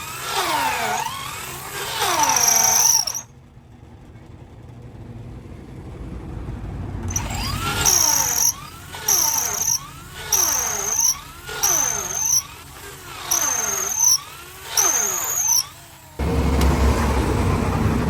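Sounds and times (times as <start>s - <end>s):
lathe cutting wood whine: 0.0s - 3.2s, 7.1s - 18.0s.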